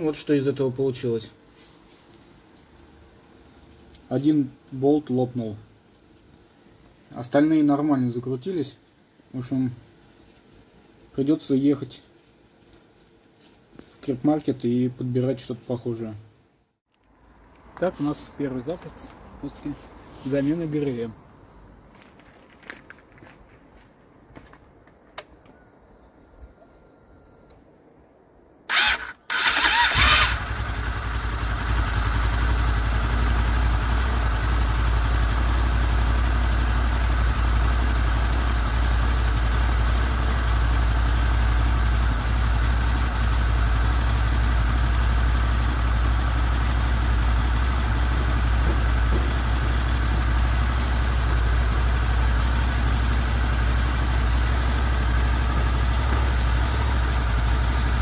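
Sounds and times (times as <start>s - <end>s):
motorcycle engine starting and idling: 28.7s - 58.0s.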